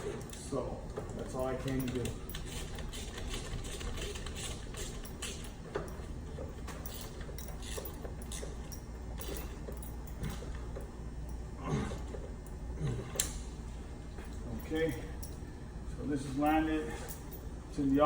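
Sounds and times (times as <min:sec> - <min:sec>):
steady low hum: 0:00.0 - 0:18.0
clicks and taps of metal tools: 0:01.0 - 0:02.5.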